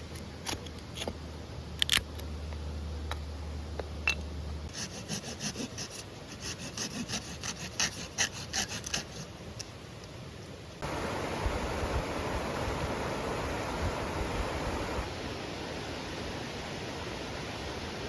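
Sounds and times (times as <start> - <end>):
low steady hum: 0.0 - 17.3
rhythmic scraping strokes on wood: 4.7 - 9.4.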